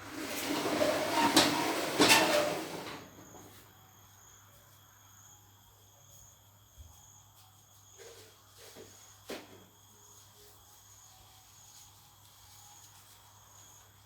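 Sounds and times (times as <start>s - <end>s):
loud rustling clatter: 0.0s - 3.1s
insects trilling faintly: 0.1s - 14.0s.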